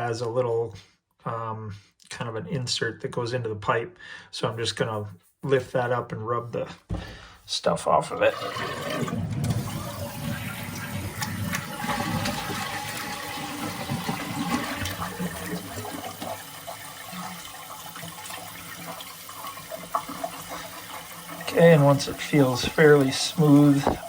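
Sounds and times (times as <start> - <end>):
toilet water running into bowl: 8.1 - 24.0.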